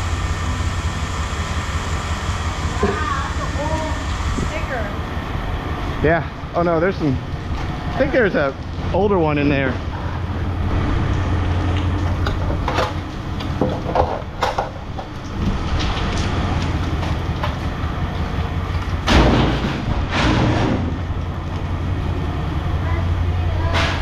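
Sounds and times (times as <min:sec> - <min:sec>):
low machine hum: 0:00.0 - 0:24.0
scrap metal clanking: 0:19.0 - 0:21.1.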